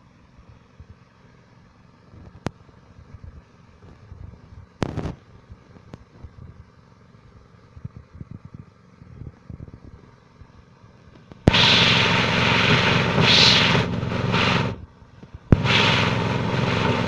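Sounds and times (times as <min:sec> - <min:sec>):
loud steady rushing noise: 0:11.3 - 0:17.0
small engine puttering: 0:15.5 - 0:17.0.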